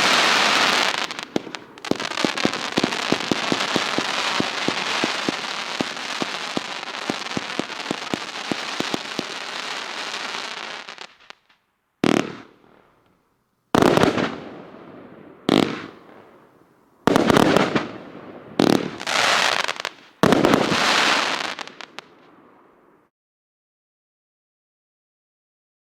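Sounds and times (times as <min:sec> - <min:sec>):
loud firework bangs: 0:00.0 - 0:11.2, 0:12.0 - 0:12.6, 0:13.8 - 0:14.6, 0:15.5 - 0:16.0, 0:17.1 - 0:22.0
firework crackling: 0:00.0 - 0:12.5, 0:17.1 - 0:18.0, 0:18.6 - 0:22.4.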